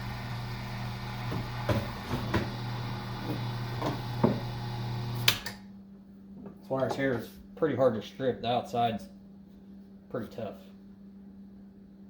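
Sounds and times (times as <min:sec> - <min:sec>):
machine motor humming: 0:00.0 - 0:05.4.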